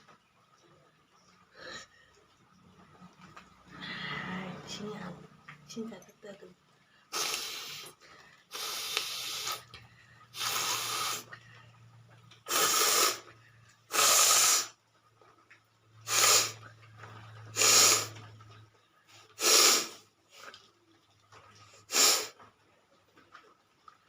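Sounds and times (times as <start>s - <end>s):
person blowing nose: 7.1s - 7.9s, 8.5s - 9.7s, 10.4s - 11.3s, 12.5s - 13.2s, 13.9s - 14.7s, 16.1s - 16.6s, 17.6s - 18.1s, 19.4s - 20.0s, 21.9s - 22.4s.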